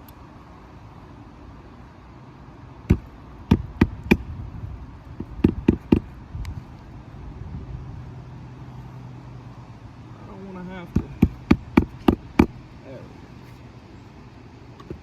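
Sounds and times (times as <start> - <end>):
hatchet hammering roofing nails: 2.9 - 4.2, 5.2 - 6.1, 10.9 - 12.6.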